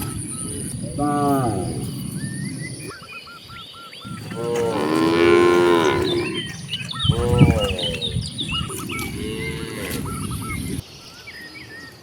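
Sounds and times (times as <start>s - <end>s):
cow mooing: 0.0s - 2.0s, 4.1s - 10.5s.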